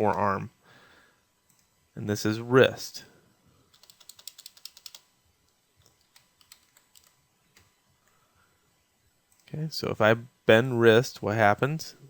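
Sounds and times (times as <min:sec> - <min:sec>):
faint typing on computer keyboard: 0:03.7 - 0:08.2.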